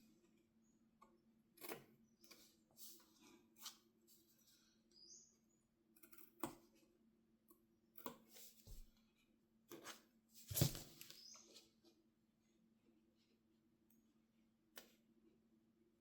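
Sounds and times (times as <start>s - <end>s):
short rustles: 10.4s - 11.4s.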